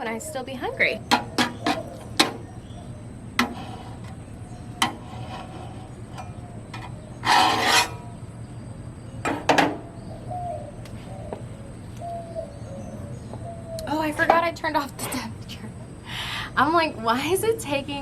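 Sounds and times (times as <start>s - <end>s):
metal spatula on griddle: 1.0s - 2.5s, 3.4s - 8.2s.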